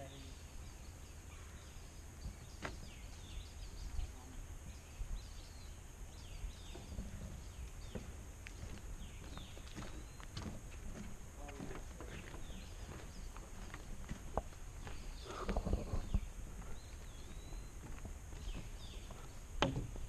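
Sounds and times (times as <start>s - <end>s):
steady high hiss: 0.0s - 13.6s
birds calling: 0.0s - 20.0s
wind rumble on microphone: 2.2s - 20.0s.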